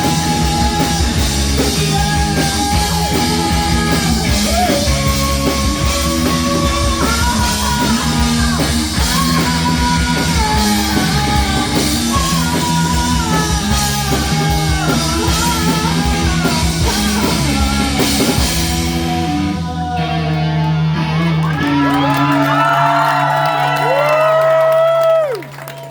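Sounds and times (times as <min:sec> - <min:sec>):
drums and cymbals: 0:00.0 - 0:19.6
person singing: 0:00.0 - 0:23.0
live rock band playing: 0:00.0 - 0:25.4.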